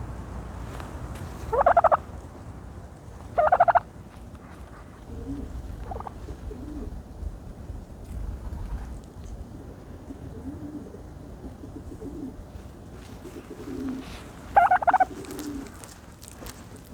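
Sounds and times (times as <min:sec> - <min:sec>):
turkey gobbling: 0:01.5 - 0:02.0, 0:03.3 - 0:04.0, 0:05.1 - 0:06.9, 0:13.3 - 0:16.0.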